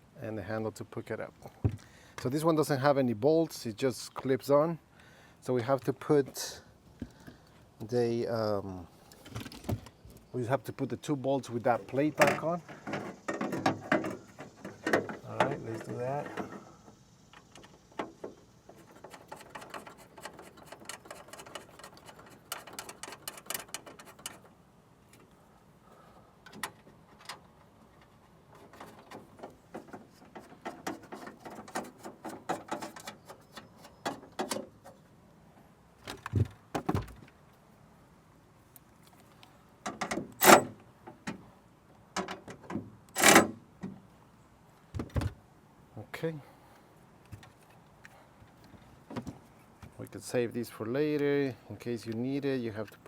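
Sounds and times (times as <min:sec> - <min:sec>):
metal parts clicking and rattling: 0:18.8 - 0:24.5.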